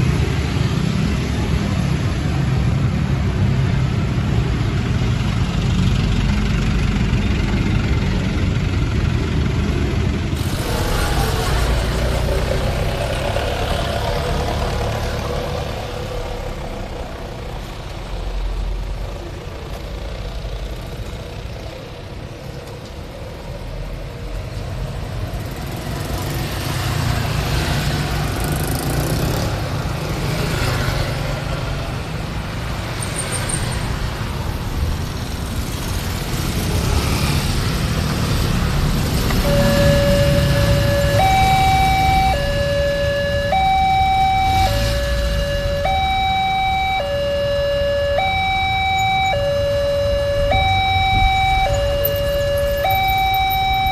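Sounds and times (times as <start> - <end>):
road traffic passing: 0.0 - 53.9
two-tone electronic warning siren: 39.3 - 53.9.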